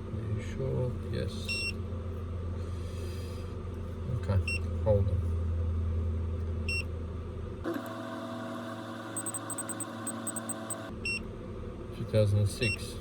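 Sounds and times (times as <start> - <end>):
steady hum: 8.9 - 11.2
electronic keypress beeps: 9.2 - 11.2.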